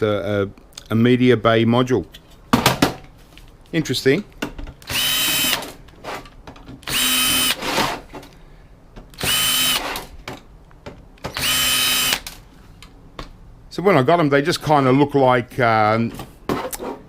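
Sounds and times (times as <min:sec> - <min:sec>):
power drill whining: 0:04.8 - 0:05.8, 0:06.8 - 0:07.9, 0:09.1 - 0:10.1, 0:11.3 - 0:12.4.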